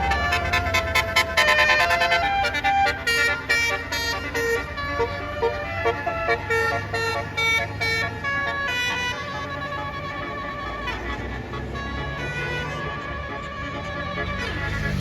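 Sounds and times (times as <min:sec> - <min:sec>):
bus horn playing melody: 0:00.0 - 0:15.0.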